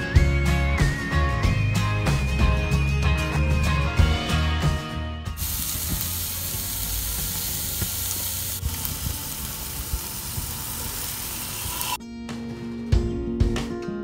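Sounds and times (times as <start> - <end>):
food sizzling in a pan: 5.4 - 12.0.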